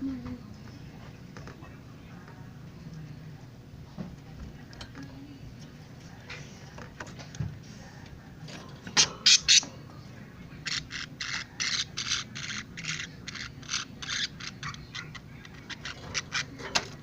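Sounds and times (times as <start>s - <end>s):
budgerigars chirping rapidly: 9.2s - 9.7s, 10.7s - 16.5s
budgerigars squawking: 9.2s - 9.7s, 10.7s - 16.5s.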